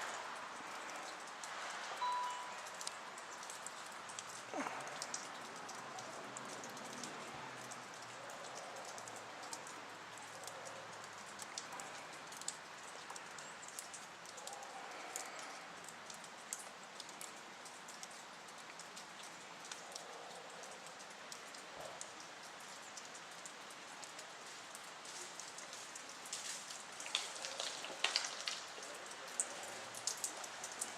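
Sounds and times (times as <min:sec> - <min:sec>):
faint steady hiss: 0:00.0 - 0:06.0
ice ticking and dripping from trees: 0:00.0 - 0:30.9.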